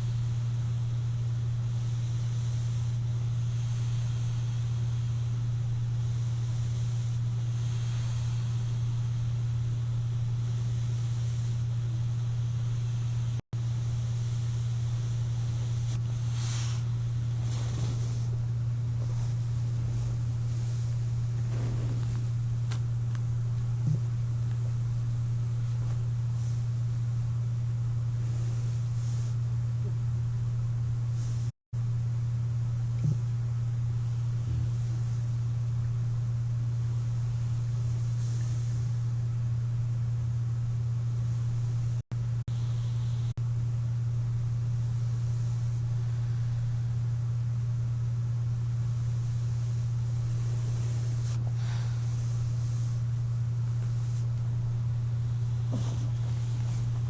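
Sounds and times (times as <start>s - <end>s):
faint hiss of air: 0.0s - 29.7s, 31.0s - 40.0s, 40.6s - 57.0s
cpap machine humming: 0.0s - 31.4s
faint breath: 1.7s - 22.8s, 36.9s - 39.2s, 42.5s - 43.4s, 45.0s - 47.0s, 49.0s - 54.6s.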